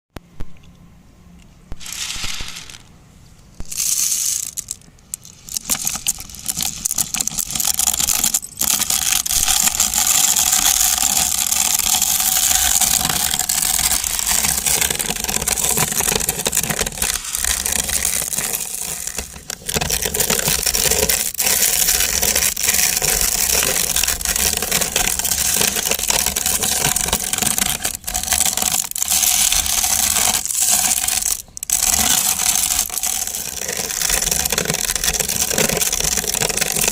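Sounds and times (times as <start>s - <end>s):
dry pasta rattling and crunching: 1.8s - 2.9s, 3.6s - 36.9s.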